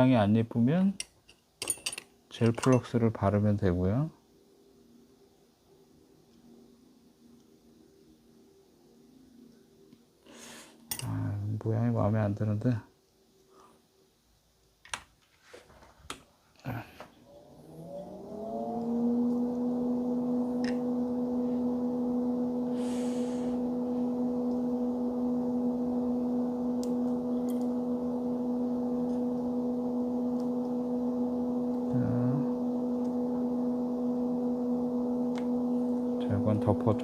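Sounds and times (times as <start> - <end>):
small electric motor humming: 17.3 - 37.0.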